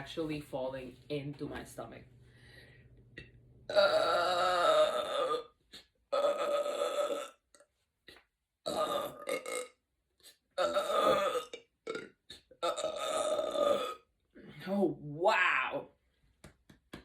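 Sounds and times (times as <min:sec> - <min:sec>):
woman belching loudly: 0:03.7 - 0:05.5, 0:06.1 - 0:07.4, 0:08.7 - 0:09.8, 0:10.6 - 0:14.1.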